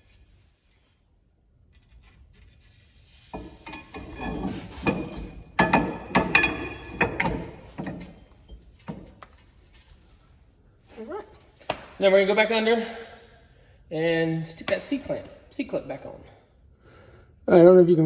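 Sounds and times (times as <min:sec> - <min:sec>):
metal scraping and rubbing: 0:01.9 - 0:11.1
metal axle clunks: 0:03.4 - 0:09.2.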